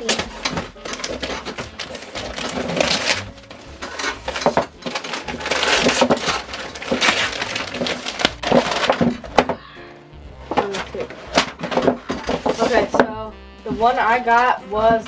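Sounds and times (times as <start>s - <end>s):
gift wrapping crinkling and tearing: 0.0s - 9.6s, 10.7s - 13.0s.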